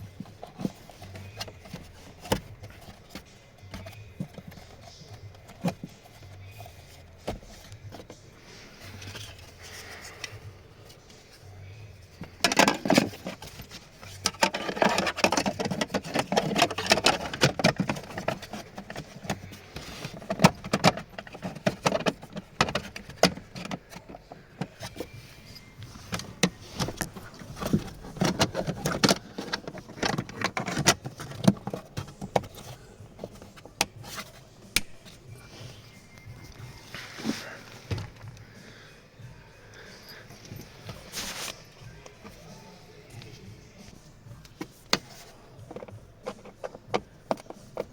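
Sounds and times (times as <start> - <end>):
plastic filter housing clicks and rattles: 12.3 - 25.0, 26.1 - 32.7.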